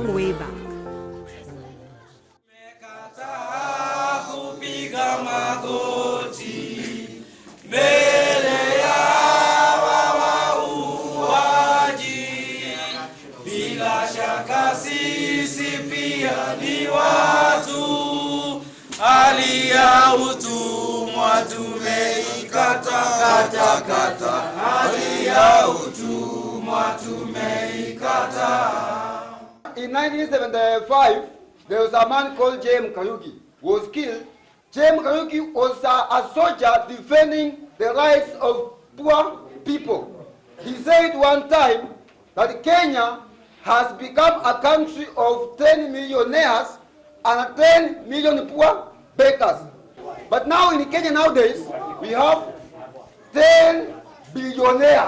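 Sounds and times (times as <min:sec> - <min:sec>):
group singing in chanting style: 0:02.5 - 0:29.7.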